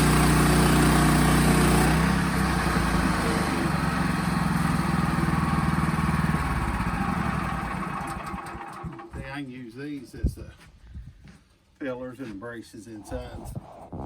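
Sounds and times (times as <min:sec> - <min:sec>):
sawmill engine running: 0:00.0 - 0:09.2.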